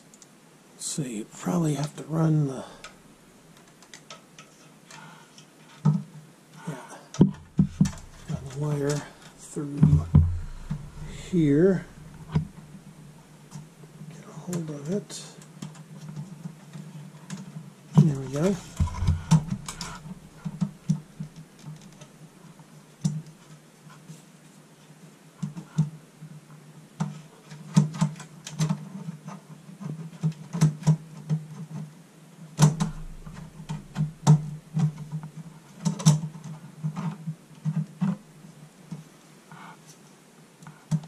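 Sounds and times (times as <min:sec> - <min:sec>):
computer case clicks and knocks: 0:18.2 - 0:21.0, 0:32.6 - 0:35.2.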